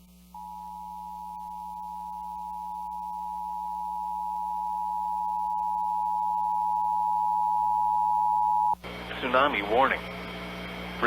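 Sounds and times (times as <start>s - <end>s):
steady warning alarm tone: 0.4s - 8.8s.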